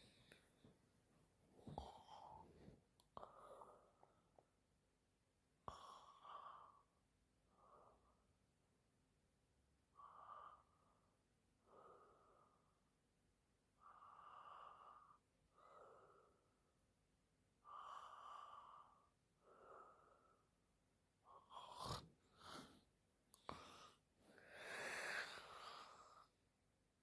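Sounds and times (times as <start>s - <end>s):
woman breathing softly: 9.9s - 12.9s, 21.4s - 26.4s.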